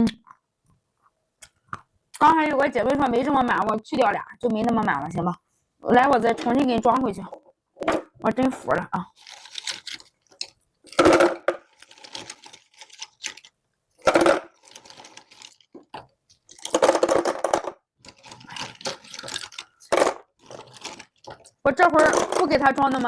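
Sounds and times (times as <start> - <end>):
nuts clattering into a jar: 14.0 - 15.5, 16.5 - 21.4.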